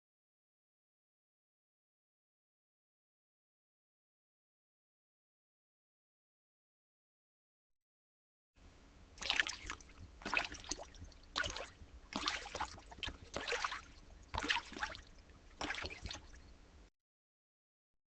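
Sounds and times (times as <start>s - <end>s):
wet squelching: 9.2s - 16.4s.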